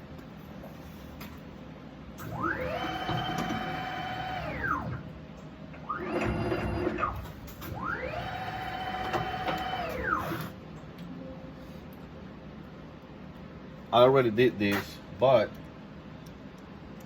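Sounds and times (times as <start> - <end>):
milling machine motors whining: 2.2 - 5.1, 5.8 - 10.6.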